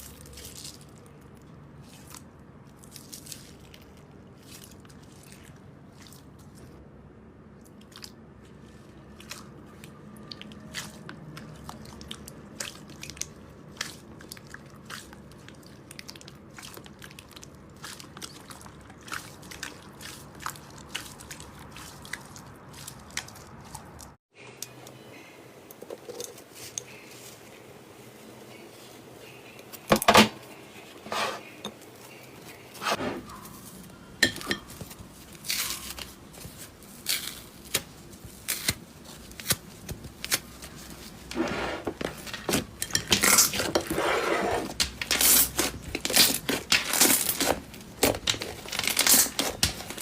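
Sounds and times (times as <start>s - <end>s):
slime squishing and crackling: 0.0s - 6.8s, 7.6s - 24.2s, 34.7s - 41.3s, 44.7s - 50.0s.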